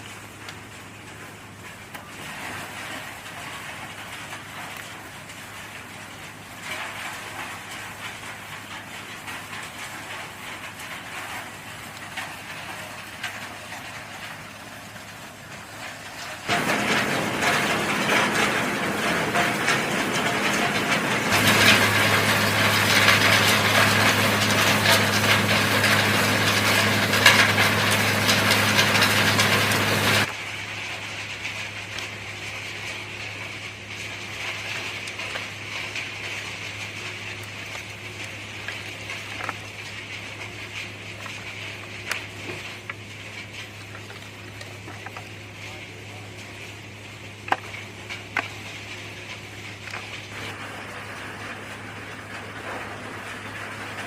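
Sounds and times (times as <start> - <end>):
machinery humming: 11.8 - 31.4, 42.4 - 54.0
loud noisy machine: 12.6 - 30.8.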